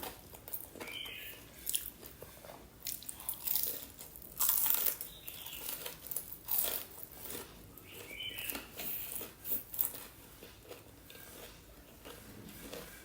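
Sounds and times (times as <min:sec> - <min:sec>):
soft chewing: 0:00.0 - 0:13.0
crunching crispy chicken: 0:02.8 - 0:13.0.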